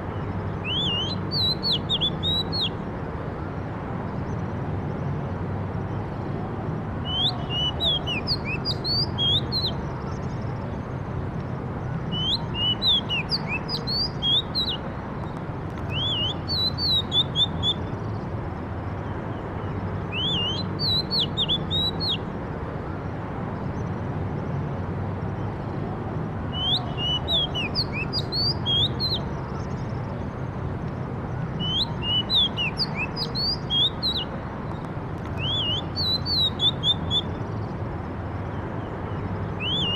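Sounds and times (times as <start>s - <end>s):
songbird whistling: 0.6s - 2.8s, 7.0s - 9.8s, 12.1s - 14.9s, 15.9s - 17.9s, 20.1s - 22.2s, 26.5s - 29.3s, 31.6s - 34.3s, 35.3s - 37.4s, 39.6s - 39.9s.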